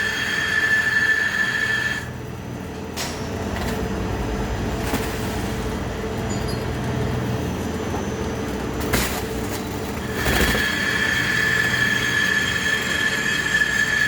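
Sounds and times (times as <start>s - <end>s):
lathe running: 0.0s - 2.2s, 9.9s - 14.0s
loud high squeal: 0.0s - 2.2s, 10.0s - 14.0s.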